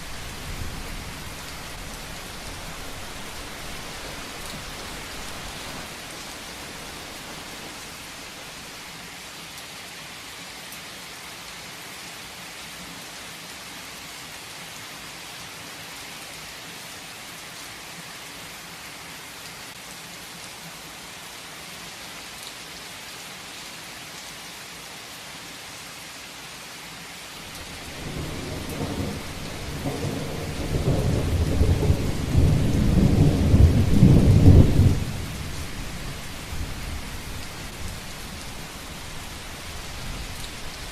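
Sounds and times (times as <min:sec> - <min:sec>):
thunder rumbling: 0:00.0 - 0:08.6, 0:27.5 - 0:40.9
heavy rain hissing: 0:00.0 - 0:09.1, 0:27.3 - 0:40.9.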